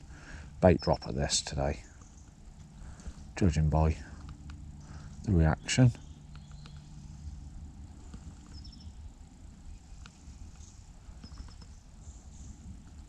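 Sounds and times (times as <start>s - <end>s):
small bird calling: 0.0s - 3.3s, 4.0s - 12.9s
low rumble: 0.0s - 13.0s
faint clicks: 4.1s - 5.0s, 6.3s - 6.9s, 8.0s - 8.7s, 10.0s - 11.8s.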